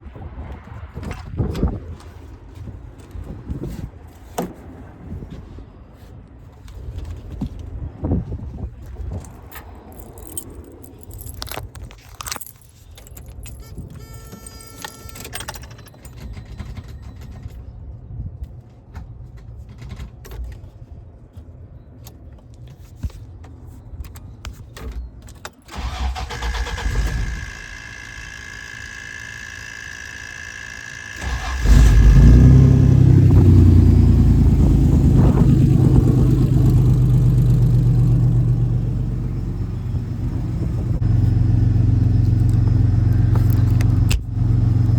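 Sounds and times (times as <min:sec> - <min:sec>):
keys jangling: 0:09.1 - 0:17.4
ignition whine: 0:13.2 - 0:17.3, 0:25.7 - 0:44.9
truck engine idling: 0:25.7 - 0:44.9.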